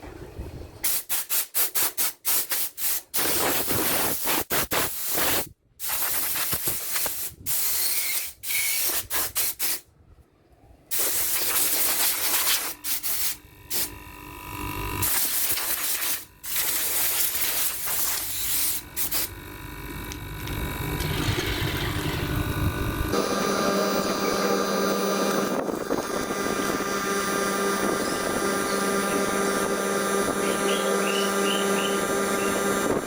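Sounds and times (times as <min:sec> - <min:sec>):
compressor humming: 0:11.0 - 0:33.0
low rumble: 0:20.3 - 0:23.2.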